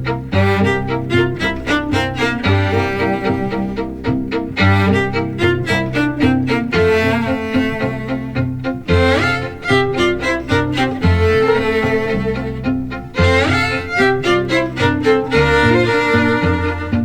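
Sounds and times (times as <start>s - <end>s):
violin and cello music: 0.0s - 17.0s.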